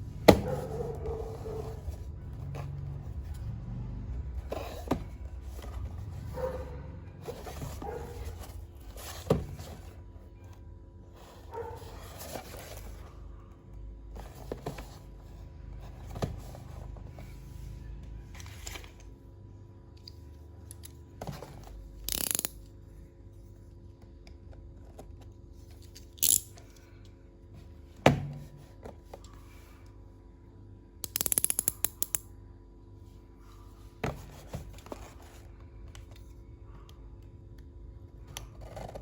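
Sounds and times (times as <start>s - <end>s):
plastic toy clicks and knocks: 22.1s - 22.6s, 26.2s - 26.6s, 31.0s - 32.2s.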